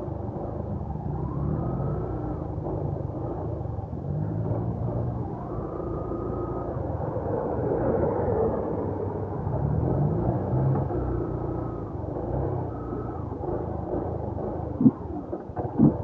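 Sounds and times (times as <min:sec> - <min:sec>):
wind noise: 0:05.3 - 0:16.0
motorcycle engine running: 0:10.2 - 0:16.0.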